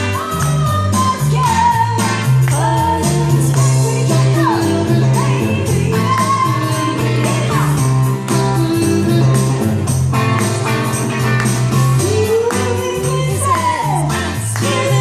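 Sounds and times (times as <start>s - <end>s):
song with guitar beat and bass: 0.0s - 15.0s.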